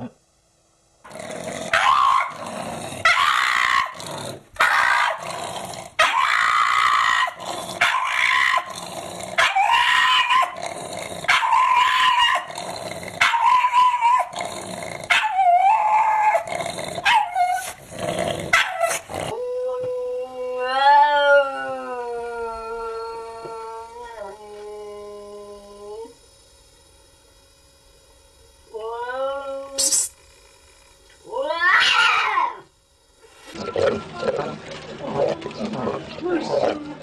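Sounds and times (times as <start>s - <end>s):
dog barking and growling: 1.1s - 19.4s, 31.2s - 32.7s.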